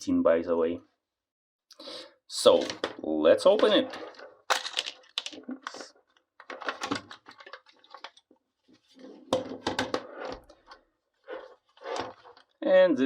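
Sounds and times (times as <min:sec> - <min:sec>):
plastic parts clicking and clattering: 0:02.4 - 0:12.6.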